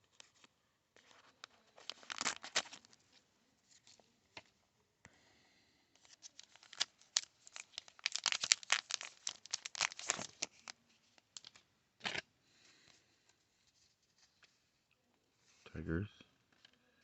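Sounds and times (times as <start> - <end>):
plastic wrapper tearing and crinkling: 1.2 - 3.0, 6.0 - 12.2.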